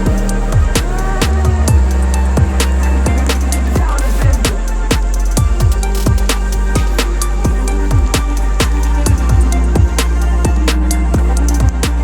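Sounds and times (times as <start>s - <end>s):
electronic music with drum beat: 0.0s - 12.0s.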